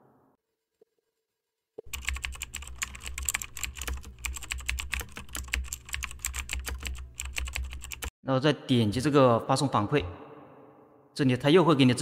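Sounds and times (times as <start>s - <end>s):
rapid typing on keyboard: 1.8s - 8.1s.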